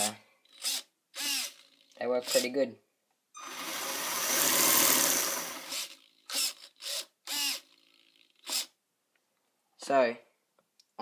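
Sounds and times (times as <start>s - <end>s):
rc car electric motor whirring: 0.5s - 2.4s, 3.4s - 8.7s.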